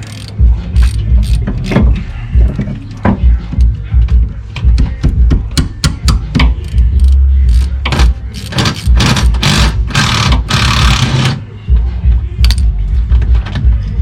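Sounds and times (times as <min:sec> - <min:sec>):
hand ratchet clicking: 0:00.0 - 0:02.0, 0:04.6 - 0:11.4
background music: 0:00.0 - 0:14.0.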